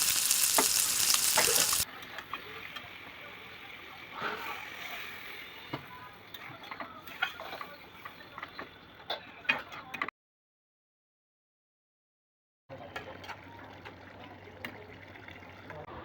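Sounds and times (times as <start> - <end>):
food sizzling in a pan: 0.0 - 5.7.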